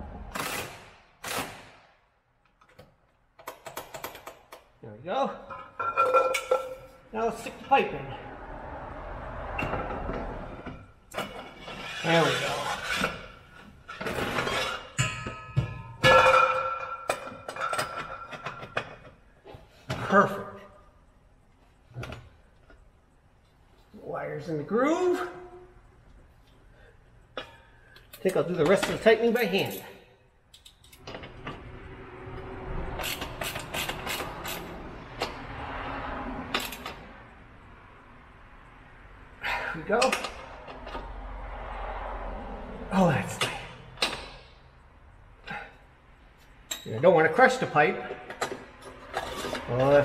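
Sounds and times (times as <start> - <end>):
metal pipe scraping: 9.5 - 18.8, 48.8 - 50.0.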